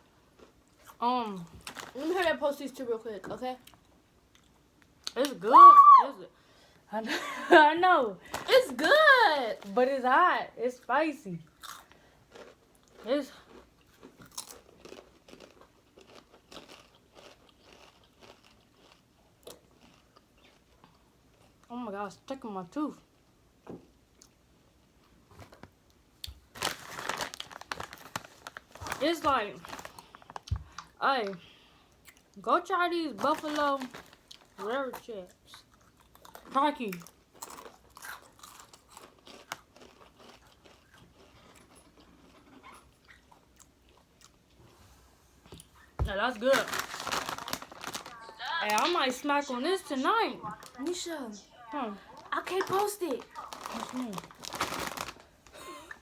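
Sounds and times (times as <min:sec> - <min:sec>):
person chewing crunchy chips: 0:11.5 - 0:21.7, 0:26.2 - 0:31.0, 0:33.2 - 0:44.6, 0:45.6 - 0:49.2, 0:52.1 - 0:56.0.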